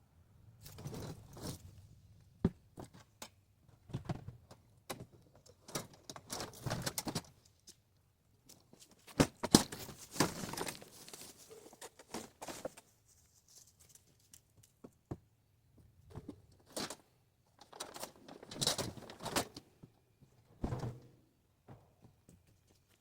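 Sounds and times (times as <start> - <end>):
handling knocks and clicks: 17.6 - 23.0.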